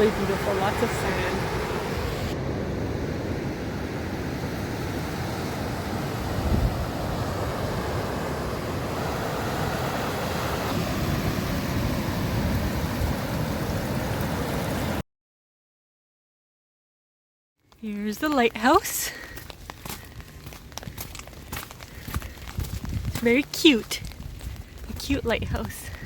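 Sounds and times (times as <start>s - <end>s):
ocean surf washing onto beach: 0.0s - 15.0s
wind on microphone: 5.8s - 9.0s, 20.6s - 26.0s.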